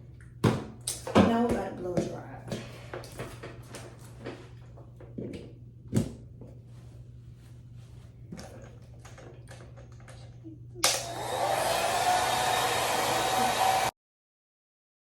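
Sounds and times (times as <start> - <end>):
hair dryer blowing: 10.8 - 14.0.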